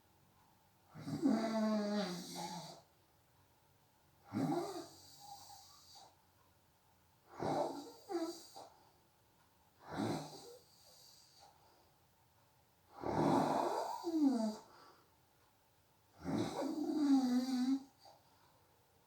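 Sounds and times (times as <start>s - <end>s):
person snoring: 0.9s - 2.9s, 4.3s - 6.1s, 7.3s - 8.7s, 9.8s - 11.5s, 12.9s - 14.7s, 16.2s - 18.0s.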